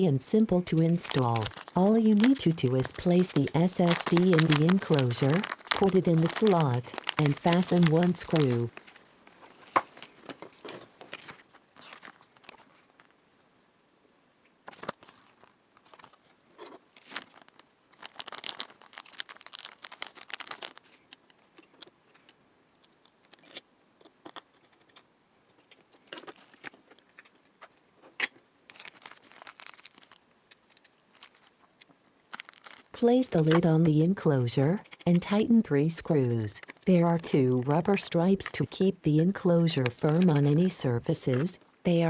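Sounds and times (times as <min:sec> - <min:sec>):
small metal parts clicking and tapping: 0:21.1 - 0:25.0, 0:30.5 - 0:32.8.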